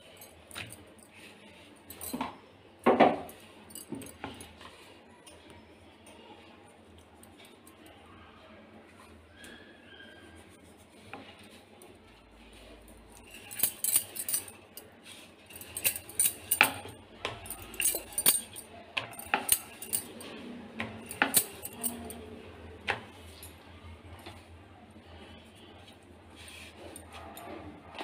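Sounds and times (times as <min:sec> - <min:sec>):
metallic utensil clinks: 0:13.2 - 0:14.6, 0:15.5 - 0:20.3, 0:21.0 - 0:22.2.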